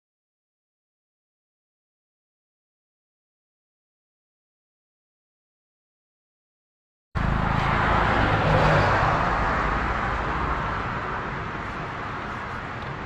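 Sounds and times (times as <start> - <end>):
vehicle passing on highway: 7.2 - 13.0.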